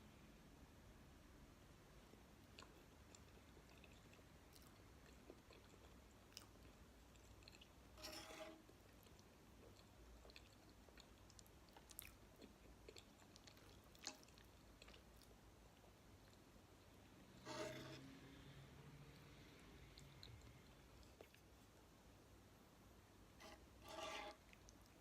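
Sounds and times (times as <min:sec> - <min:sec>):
close-up chewing: 0:02.4 - 0:08.0, 0:08.6 - 0:16.5, 0:19.9 - 0:21.7.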